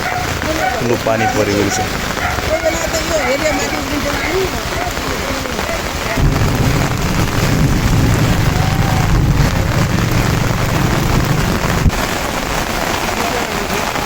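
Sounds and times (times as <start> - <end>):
heavy rain pouring: 0.0 - 14.0
rushing flooding river: 0.0 - 14.0
low rumble: 6.2 - 13.0.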